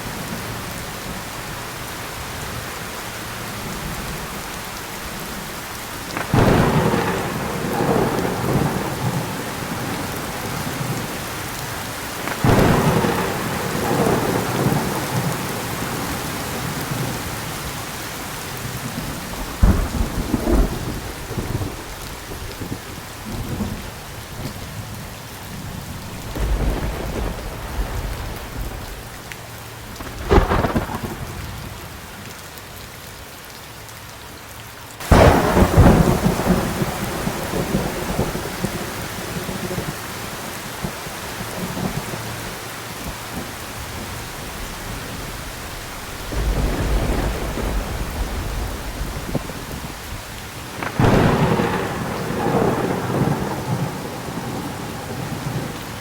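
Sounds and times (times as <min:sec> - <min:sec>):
heavy rain: 0:00.0 - 0:56.0
thunder cracks and rumbles: 0:06.1 - 0:17.4, 0:18.6 - 0:24.9, 0:25.6 - 0:31.9, 0:35.0 - 0:40.1, 0:43.1 - 0:55.9.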